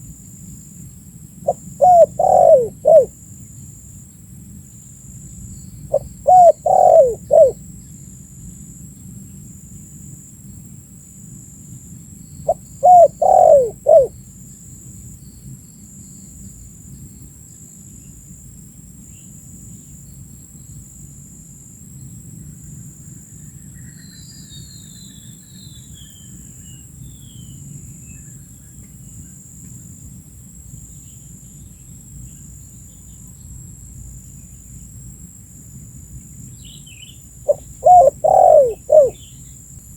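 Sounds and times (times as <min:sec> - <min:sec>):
dove cooing: 0:01.5 - 0:03.1, 0:05.9 - 0:07.6, 0:12.5 - 0:14.1, 0:37.5 - 0:39.2
faint small bird chirps: 0:01.5 - 0:03.1, 0:05.3 - 0:08.0, 0:12.2 - 0:18.2, 0:23.2 - 0:29.9, 0:36.3 - 0:39.7.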